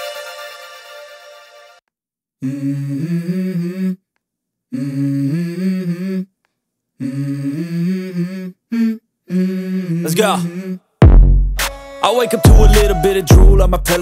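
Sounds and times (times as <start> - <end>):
person humming: 2.4 - 4.0, 4.7 - 6.3, 7.0 - 10.8, 12.2 - 14.0.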